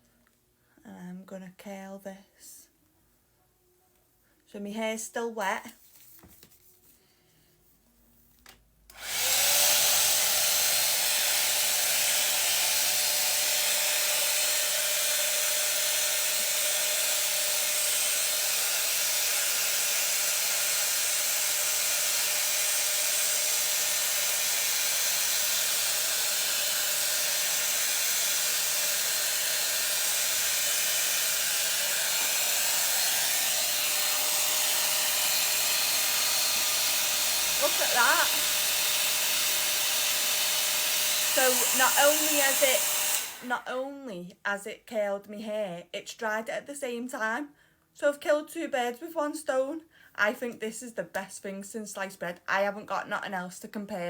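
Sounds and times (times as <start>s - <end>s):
hair dryer brush blowing: 8.9s - 43.7s.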